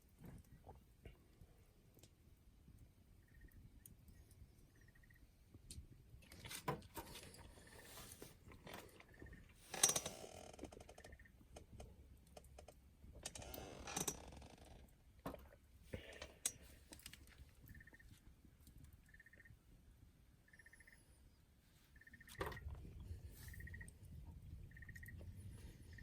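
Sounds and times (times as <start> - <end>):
faint short chirp: 20.5 - 21.2.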